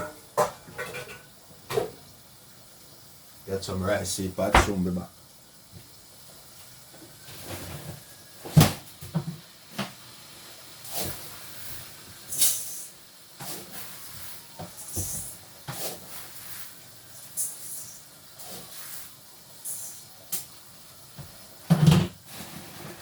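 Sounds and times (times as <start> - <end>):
kitchen knocks and clatter: 4.5 - 4.9, 21.7 - 22.2
short hissing bursts: 9.5 - 21.6.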